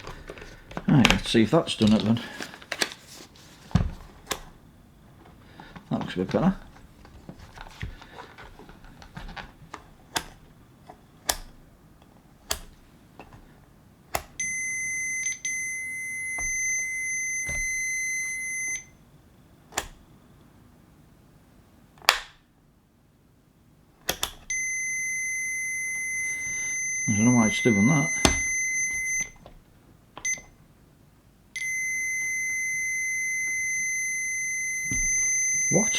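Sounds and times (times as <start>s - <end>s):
multimeter high beep: 14.4s - 18.9s, 24.5s - 29.4s, 30.2s - 30.5s, 31.6s - 35.9s.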